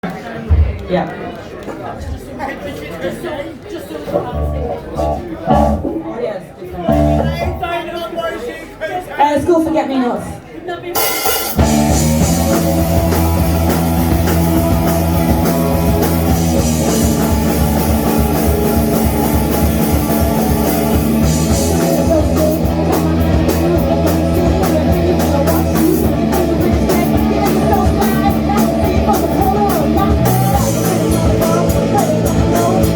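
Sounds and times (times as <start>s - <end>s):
instrumental rock band playing: 4.1s - 6.0s, 6.9s - 7.8s, 11.0s - 32.9s.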